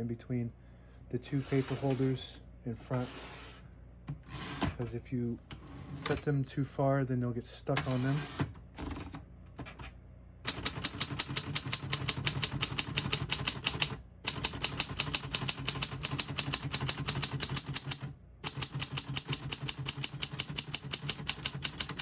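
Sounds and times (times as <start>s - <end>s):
manual typewriter typing: 10.5s - 22.0s.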